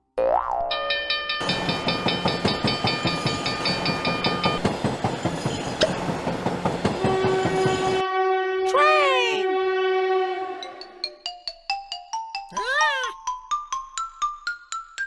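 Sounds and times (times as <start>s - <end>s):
train wheels clattering on rails: 1.4s - 8.0s
train horn chord: 7.0s - 11.1s.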